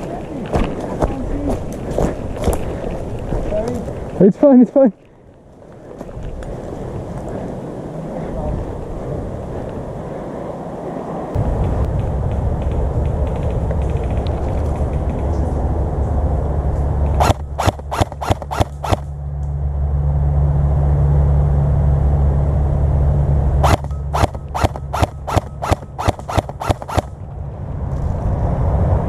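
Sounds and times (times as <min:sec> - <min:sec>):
steady low rumble: 0:05.2 - 0:29.0
airsoft rifle shots cracking: 0:17.1 - 0:19.1, 0:23.6 - 0:27.2.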